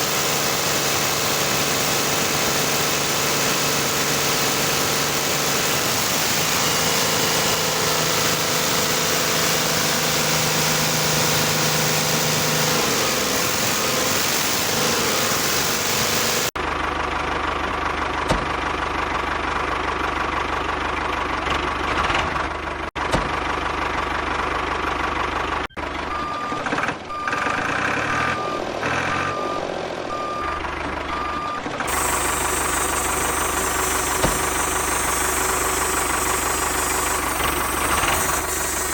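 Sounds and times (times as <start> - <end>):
vehicle engine running: 0.0 - 38.9
reversing beeper: 25.7 - 38.9.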